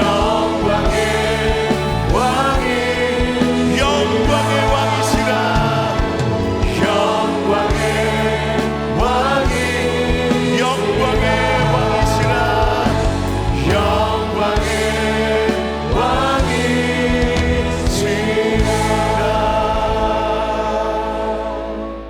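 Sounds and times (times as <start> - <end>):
instrumental accompaniment: 0.0 - 22.0
praise team singing gospel song: 0.0 - 22.0.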